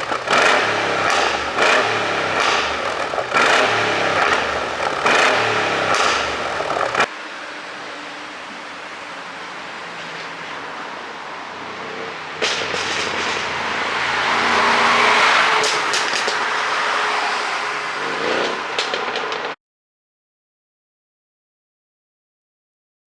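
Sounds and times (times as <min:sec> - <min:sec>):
exhaust crackles and pops: 0:00.0 - 0:07.2, 0:07.8 - 0:16.9, 0:18.0 - 0:19.6
car engine accelerating: 0:00.0 - 0:19.6.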